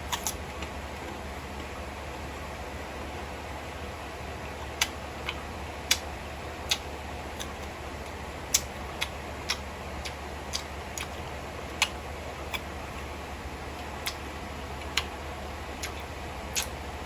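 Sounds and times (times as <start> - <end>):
steady low hum: 0.0 - 17.0
chewing clicks and smacks: 0.1 - 1.7, 4.4 - 7.7, 8.5 - 12.7, 13.8 - 15.2, 15.8 - 16.8.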